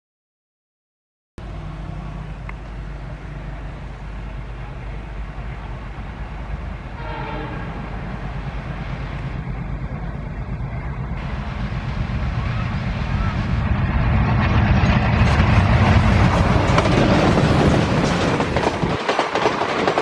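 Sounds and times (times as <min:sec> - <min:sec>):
diesel locomotive engines rumbling: 0:01.4 - 0:20.0
train horn blast: 0:06.9 - 0:09.4.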